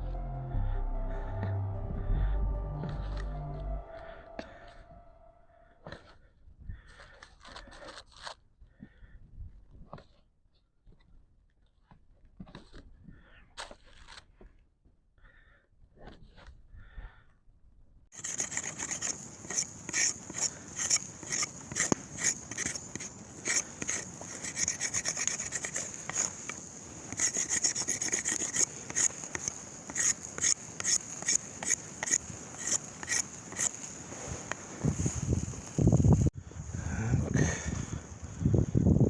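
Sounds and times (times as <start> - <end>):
hand saw cutting wood: 18.2 - 35.7.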